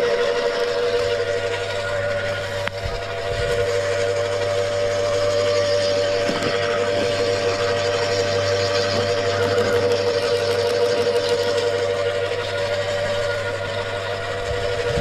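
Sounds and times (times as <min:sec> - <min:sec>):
wood chipper whining: 0:00.0 - 0:15.0.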